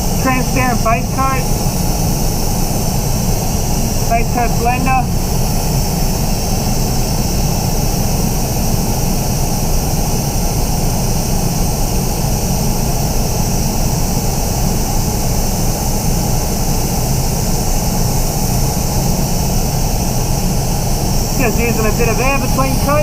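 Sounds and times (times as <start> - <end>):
extraction fans rushing air: 0.0 - 8.1, 18.5 - 23.0.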